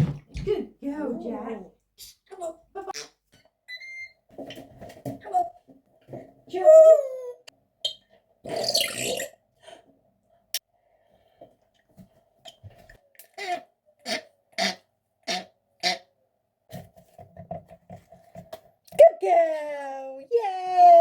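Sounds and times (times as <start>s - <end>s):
parrot mimicking a burp: 8.5s - 9.4s, 13.4s - 16.0s.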